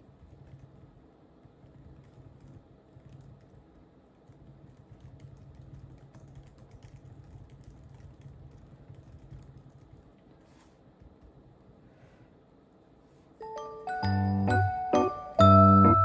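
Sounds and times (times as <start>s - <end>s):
mechanical keyboard typing: 0.0s - 10.2s.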